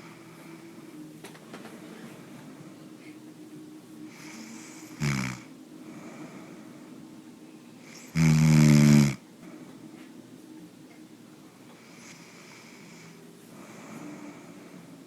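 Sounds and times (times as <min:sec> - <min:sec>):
man snoring: 0:04.1 - 0:05.5, 0:07.9 - 0:09.2.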